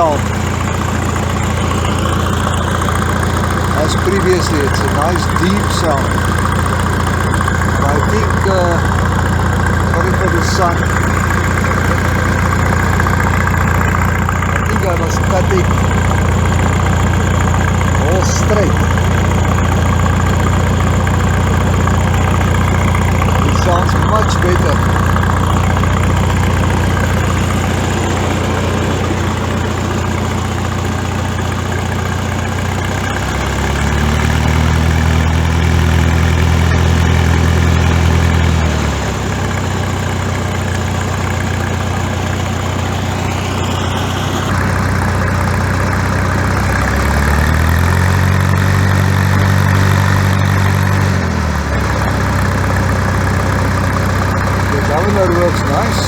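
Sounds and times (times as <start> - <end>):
tractor engine idling and revving: 0.0 - 56.0.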